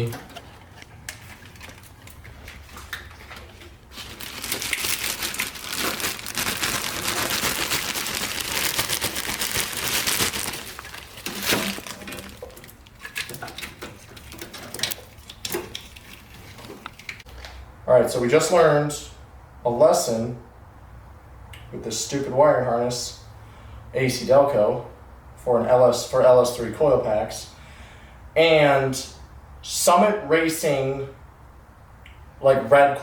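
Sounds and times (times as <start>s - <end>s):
plastic crinkling: 3.3s - 17.2s.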